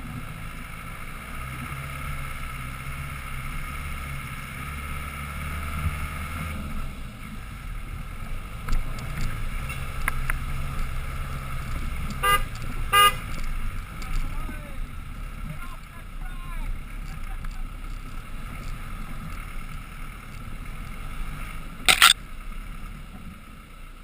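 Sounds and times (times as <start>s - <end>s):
car engine running at low revs: 0.0s - 24.0s
car horn toot: 12.2s - 13.2s.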